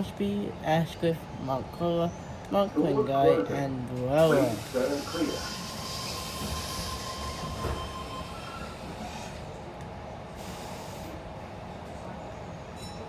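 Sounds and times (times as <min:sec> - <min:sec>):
train wheels rumbling on rails: 0:03.9 - 0:13.0.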